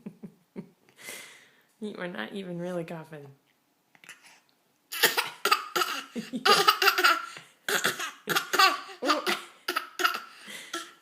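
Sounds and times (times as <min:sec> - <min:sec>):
person fake coughing: 0:07.7 - 0:10.9.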